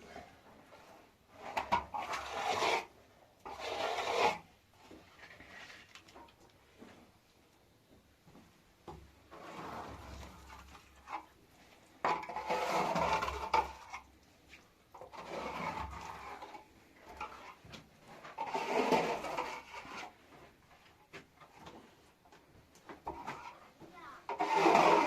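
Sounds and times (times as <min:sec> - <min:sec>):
cookware clattering and rubbing: 0:23.1 - 0:25.0.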